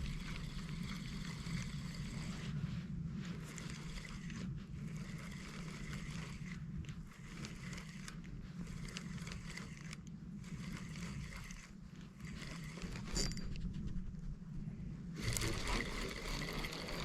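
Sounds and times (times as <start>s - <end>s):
steady low hum: 0.0s - 17.0s
fishing reel clicking: 7.1s - 13.4s.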